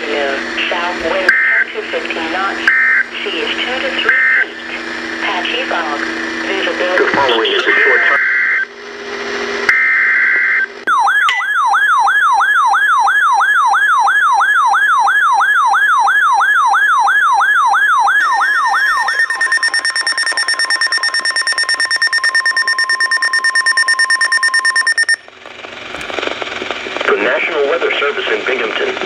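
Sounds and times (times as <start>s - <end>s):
pulsing alarm tone: 9.8s - 25.3s.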